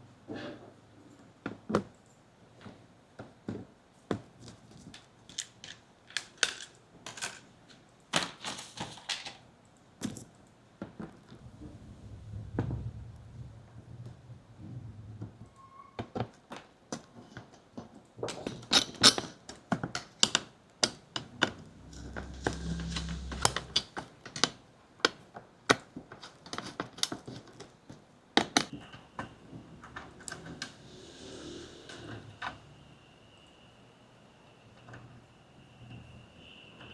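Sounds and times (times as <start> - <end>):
low hum: 11.4 - 13.9, 21.3 - 24.0.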